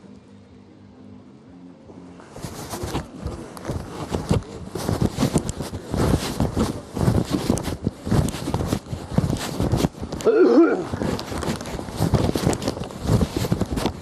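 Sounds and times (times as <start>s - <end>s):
footsteps thumping and scuffing: 2.3s - 10.3s, 10.9s - 14.0s.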